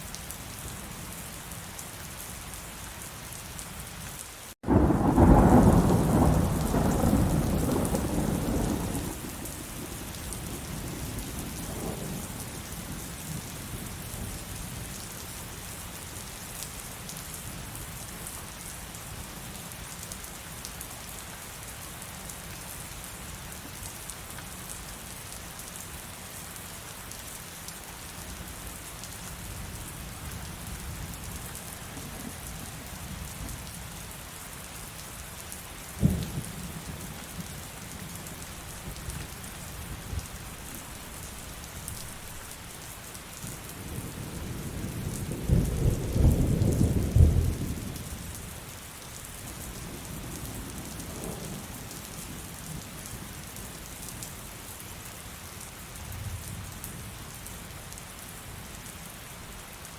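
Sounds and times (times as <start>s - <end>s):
heavy rain: 0.0s - 59.9s
sharp crack of thunder: 4.6s - 9.5s
thunder rumbling: 4.6s - 9.5s, 43.8s - 48.4s.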